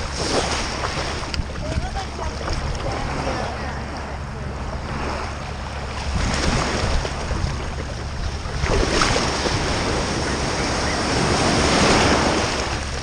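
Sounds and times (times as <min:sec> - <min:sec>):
ocean surf washing in: 0:00.0 - 0:13.0
wind buffeting the microphone: 0:00.0 - 0:13.0.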